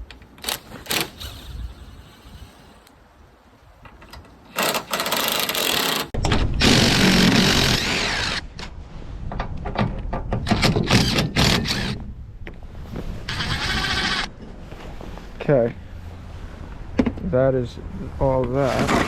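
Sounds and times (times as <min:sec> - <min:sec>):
cordless power driver running bolts: 0:00.1 - 0:02.9, 0:04.5 - 0:08.4, 0:10.6 - 0:12.0, 0:13.3 - 0:14.3.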